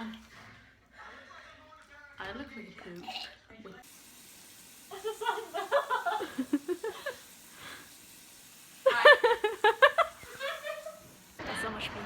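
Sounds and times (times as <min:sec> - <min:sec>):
woman talking or laughing: 0:08.8 - 0:11.1.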